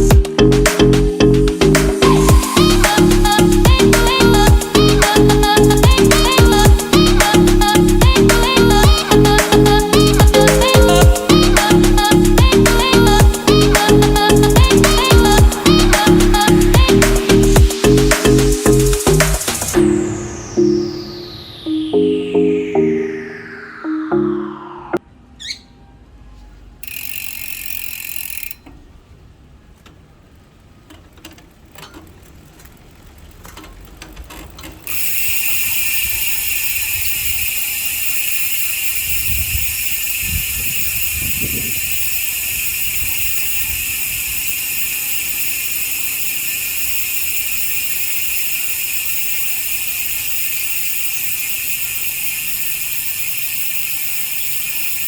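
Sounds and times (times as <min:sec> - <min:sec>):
bicycle freehub ratcheting buzz: 0:01.8 - 0:19.8, 0:26.8 - 0:28.7, 0:32.7 - 0:55.0.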